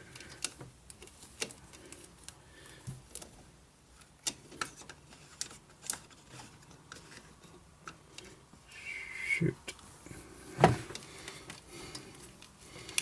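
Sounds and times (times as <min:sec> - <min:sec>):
plastic parts clicking and tapping: 0:00.1 - 0:02.1.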